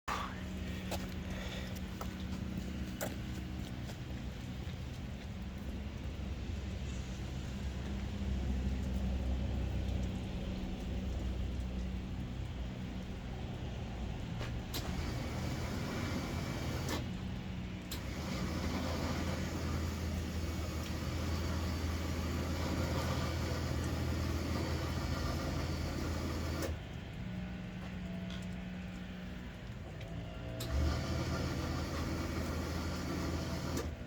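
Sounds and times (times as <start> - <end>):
vehicle engine idling: 0.1 - 34.0
electric winch motor whirring: 14.7 - 26.9, 29.6 - 34.0.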